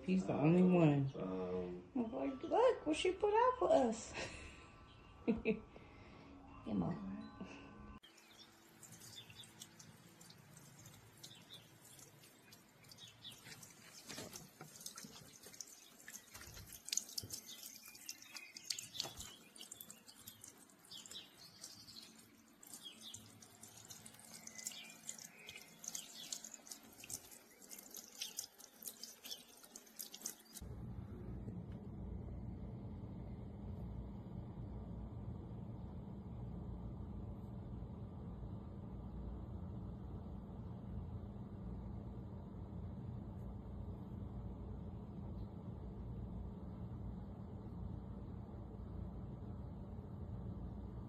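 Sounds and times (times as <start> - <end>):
fountain water splashing: 8.1 - 30.6
steady low rumble: 30.6 - 51.0.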